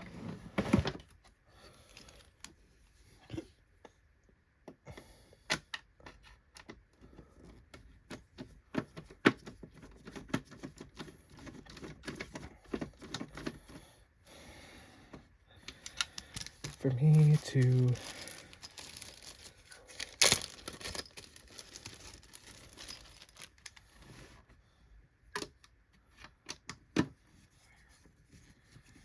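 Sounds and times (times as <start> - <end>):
hands clicking on plastic parts: 15.1 - 16.8, 17.6 - 23.0.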